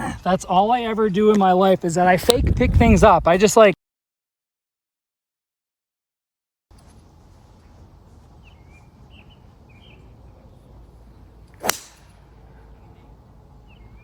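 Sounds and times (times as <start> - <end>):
wind noise: 2.1 - 3.6
bird chirps: 8.4 - 11.3, 12.8 - 14.0
golf club striking ball: 11.5 - 12.3.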